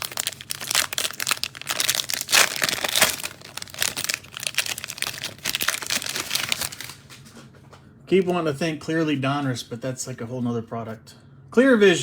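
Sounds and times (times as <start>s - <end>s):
cellophane wrapper crinkling and tearing: 0.0s - 7.2s.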